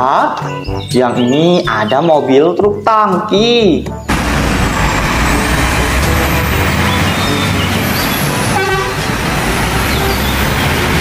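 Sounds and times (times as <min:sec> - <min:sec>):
truck engine rumbling: 0:03.9 - 0:11.0
truck horn toot: 0:04.1 - 0:10.8.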